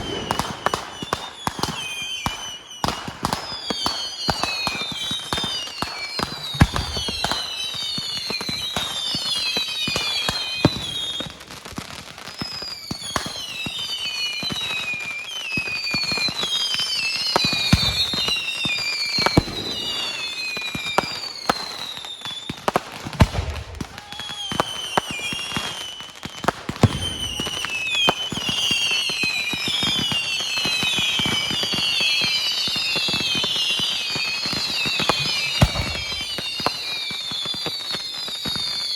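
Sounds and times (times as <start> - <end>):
deep firework booms: 0.0 - 1.7, 6.6 - 7.4, 19.3 - 20.3, 23.0 - 25.4, 26.5 - 27.7, 35.0 - 36.7
firework cracks: 0.0 - 9.2, 17.4 - 32.4, 33.0 - 37.0
whistling fireworks: 0.0 - 38.9.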